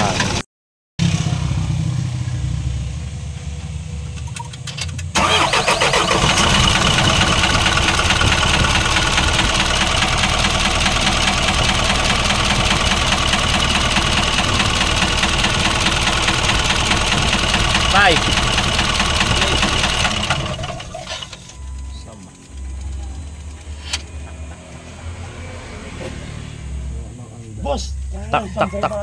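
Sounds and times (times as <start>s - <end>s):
diesel engine knocking clatter: 5.1s - 25.0s.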